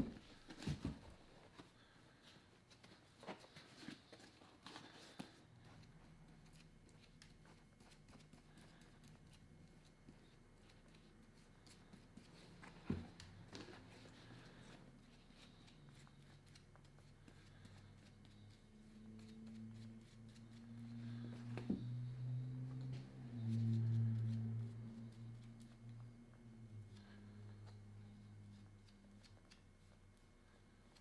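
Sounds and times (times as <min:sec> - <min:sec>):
faint taps and handling noises: 0:00.0 - 0:26.2
low steady hum: 0:00.0 - 0:31.0.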